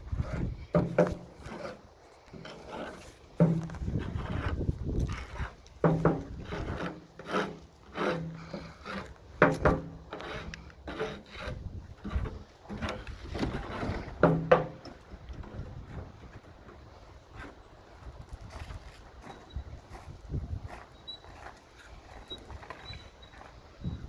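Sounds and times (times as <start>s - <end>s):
garage door scraping: 0.1s - 16.6s.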